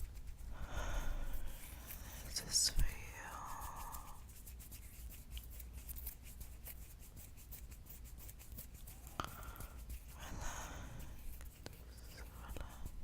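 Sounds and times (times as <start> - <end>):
heavy breath: 0.5 - 2.2
fingernails scratching skin: 1.2 - 13.0.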